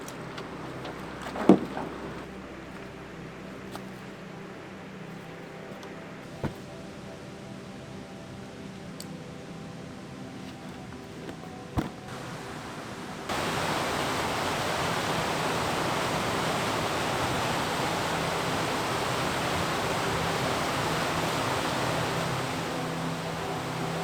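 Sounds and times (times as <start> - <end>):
river rapids rushing: 12.0 - 24.0.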